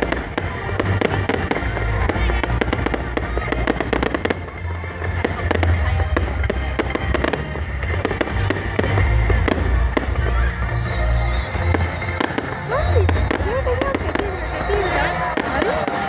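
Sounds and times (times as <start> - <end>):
loud music with heavy bass: 0.0 - 16.0.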